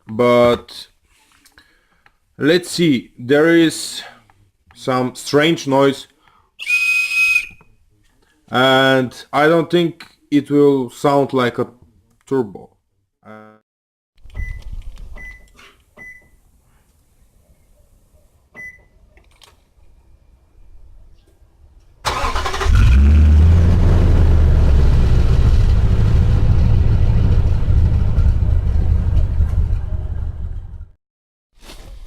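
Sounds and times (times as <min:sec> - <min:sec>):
car engine starting and running: 0:22.1 - 0:30.9.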